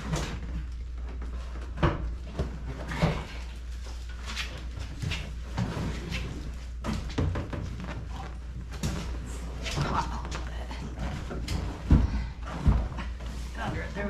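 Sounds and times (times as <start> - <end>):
steady low hum: 0.0 - 14.0
knocks and bumps of seat moving: 4.8 - 10.3, 11.0 - 14.0.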